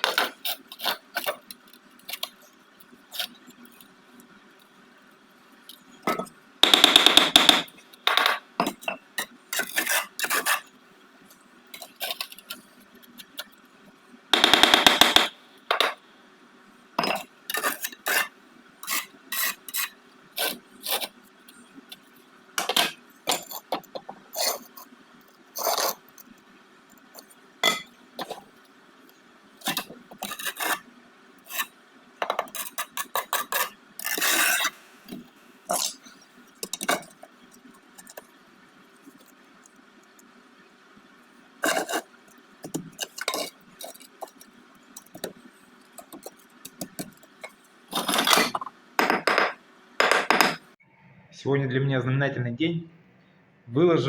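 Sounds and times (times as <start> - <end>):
trowel scraping and tapping brick: 0.0 - 3.9, 5.7 - 10.7, 11.8 - 13.6, 17.0 - 25.0, 29.6 - 38.4, 41.6 - 50.6
loud rasping trowel scrapes: 9.6 - 10.7, 17.5 - 21.2, 32.6 - 34.8, 41.6 - 42.0.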